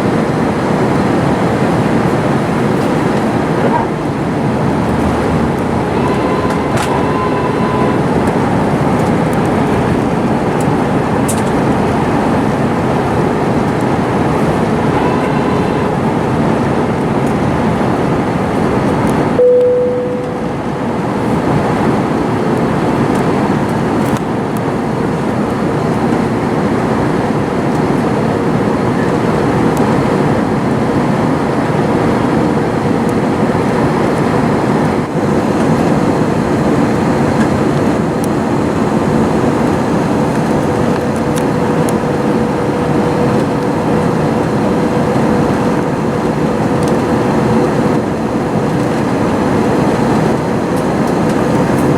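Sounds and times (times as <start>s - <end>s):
steady hum: 0.0s - 22.3s
roar of engines and airflow: 0.0s - 51.9s.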